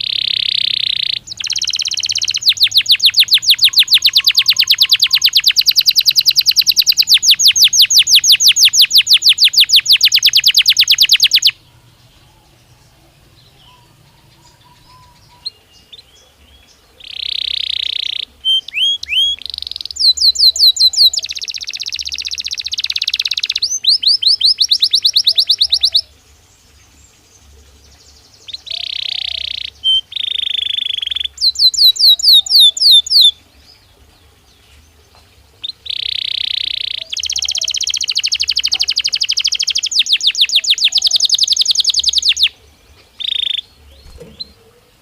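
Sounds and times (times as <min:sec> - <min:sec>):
canary singing trills: 0:00.0 - 0:45.0.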